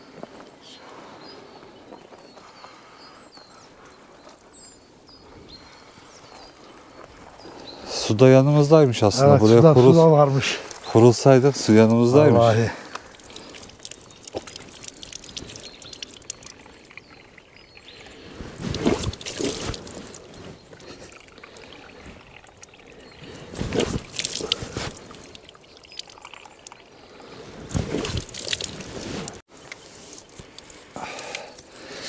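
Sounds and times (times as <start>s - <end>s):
water trickling from spout: 7.0s - 32.0s.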